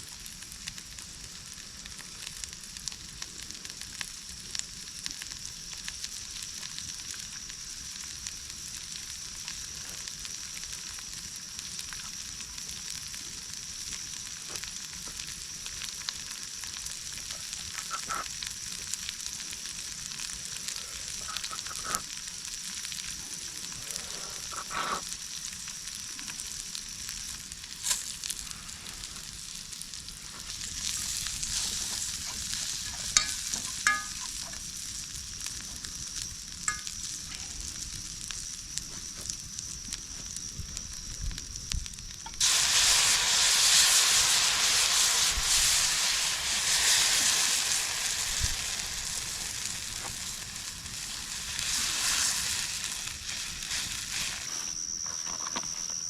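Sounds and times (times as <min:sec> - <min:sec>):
food sizzling in hot oil: 0:00.0 - 0:55.0
utensil tapping and scraping pan: 0:32.9 - 0:34.6
loud rushing hiss: 0:42.4 - 0:54.6.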